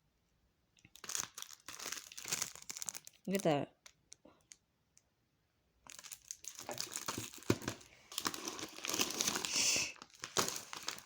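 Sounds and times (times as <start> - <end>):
packaging rustling: 0.9 - 4.1, 5.9 - 11.0.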